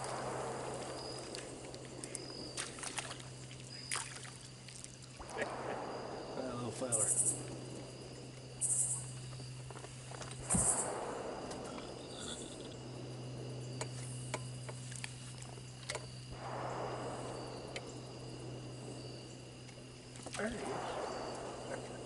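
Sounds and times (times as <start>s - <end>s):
insects trilling: 0.0s - 22.0s
low steady hum: 0.0s - 22.0s.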